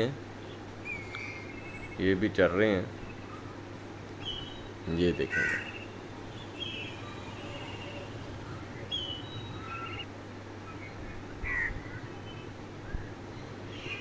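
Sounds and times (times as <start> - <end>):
steady low background hum: 0.0 - 14.0
short bird calls: 0.4 - 2.2, 2.9 - 14.0.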